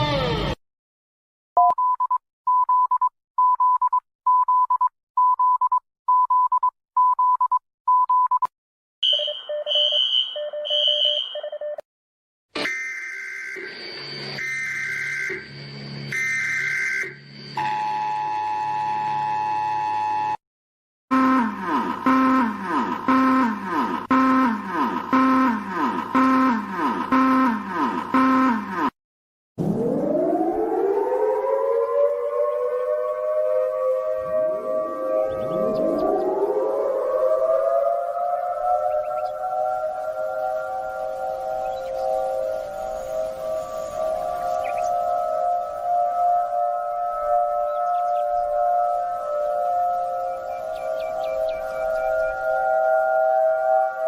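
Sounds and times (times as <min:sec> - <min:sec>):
emergency alert alarm tone: 0:09.0 - 0:11.8, 0:12.6 - 0:20.4, 0:21.1 - 0:29.0, 0:29.6 - 0:54.0
rapid emergency alert beeping: 0:09.0 - 0:11.8, 0:12.6 - 0:20.4, 0:21.1 - 0:29.0.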